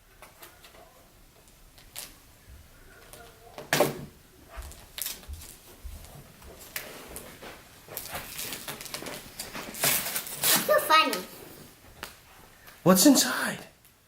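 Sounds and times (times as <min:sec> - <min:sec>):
plastic packaging crinkling: 0:04.7 - 0:05.7, 0:06.7 - 0:11.3.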